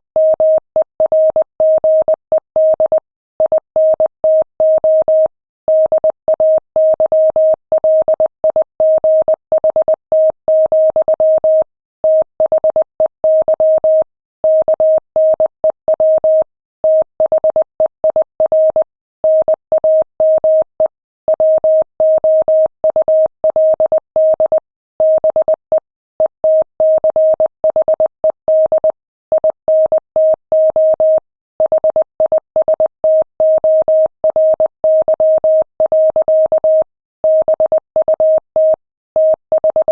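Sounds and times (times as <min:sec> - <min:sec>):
morse code beeps: 0:21.3 - 0:39.9.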